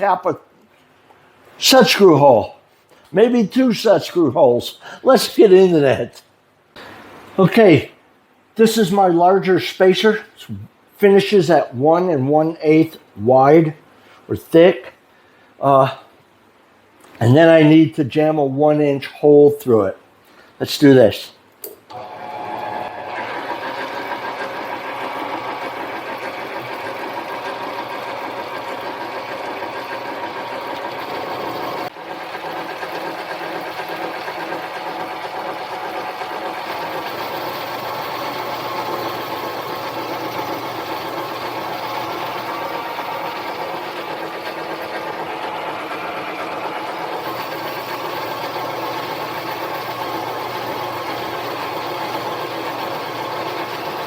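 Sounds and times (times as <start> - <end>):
lathe motor whining: 21.9 - 54.0.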